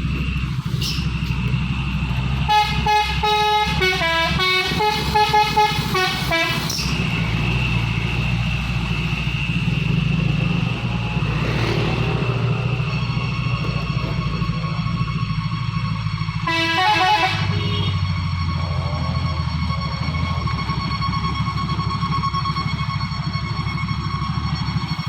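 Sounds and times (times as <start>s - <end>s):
truck engine running: 0.0s - 25.0s
musical air horn melody: 2.5s - 7.1s, 16.3s - 21.8s.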